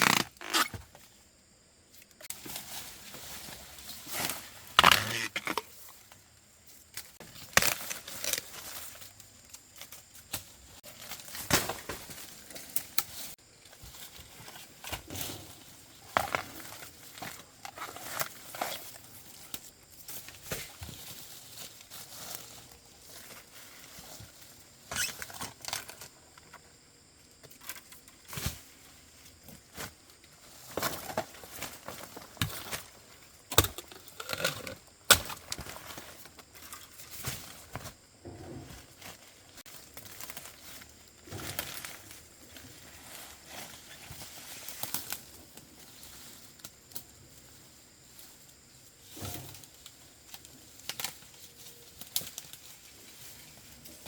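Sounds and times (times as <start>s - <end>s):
dry leaves rustling and crackling: 7.1s - 14.8s, 38.9s - 54.0s.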